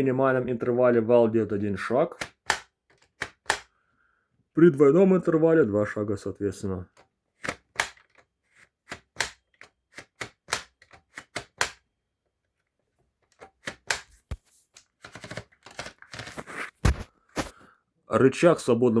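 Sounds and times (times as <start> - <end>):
typewriter mechanism clicking: 2.2 - 3.7, 8.9 - 11.8.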